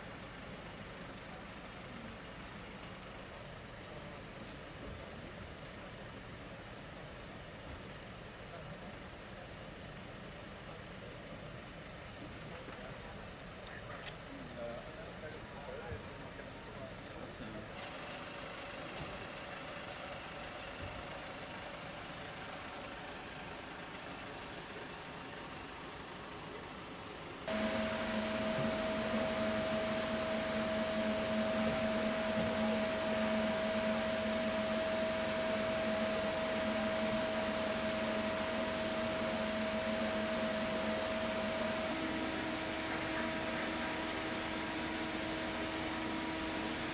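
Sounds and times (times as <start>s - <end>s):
drone with two steady tones: 27.5s - 46.9s
mechanical hum: 27.5s - 46.9s.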